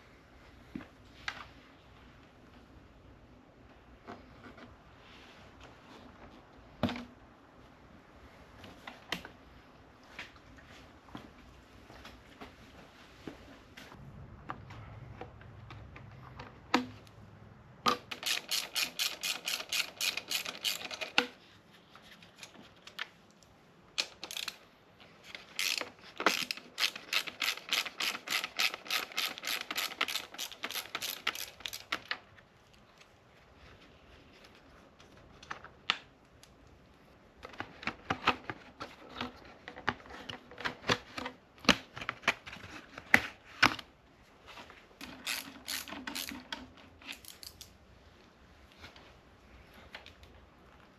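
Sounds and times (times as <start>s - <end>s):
ratchet wrench clicking: 18.1s - 21.1s, 24.0s - 24.6s, 25.6s - 31.9s, 45.2s - 46.4s.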